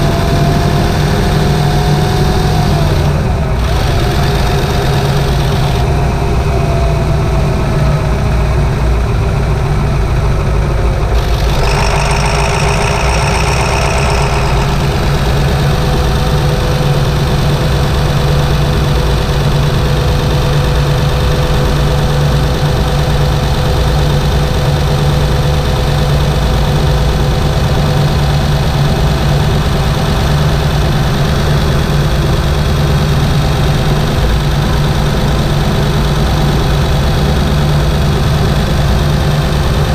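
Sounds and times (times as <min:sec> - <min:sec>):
high-pitched whine: 0:00.0 - 0:05.9, 0:11.1 - 0:25.8
diesel engine running: 0:00.0 - 0:39.9.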